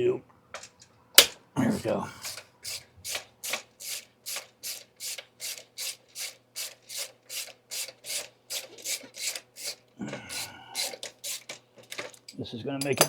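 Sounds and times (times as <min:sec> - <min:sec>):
ratchet wrench clicking: 0:02.2 - 0:12.1.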